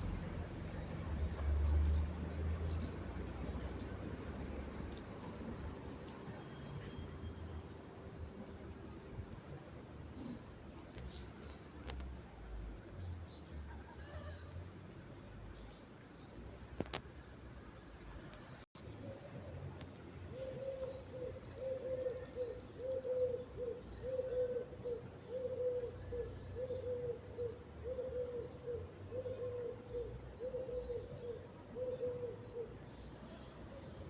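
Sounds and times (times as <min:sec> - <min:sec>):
bird low cooing: 0:18.9 - 0:19.7, 0:20.3 - 0:33.5.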